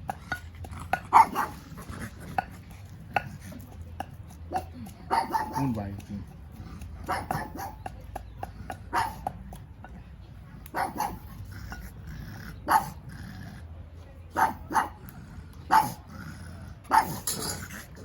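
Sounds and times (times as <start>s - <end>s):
dog barking: 1.0s - 1.6s, 4.5s - 6.0s, 7.0s - 8.0s, 8.7s - 9.4s, 10.6s - 11.4s, 12.6s - 13.0s, 14.3s - 15.0s, 15.7s - 16.0s, 16.9s - 17.3s.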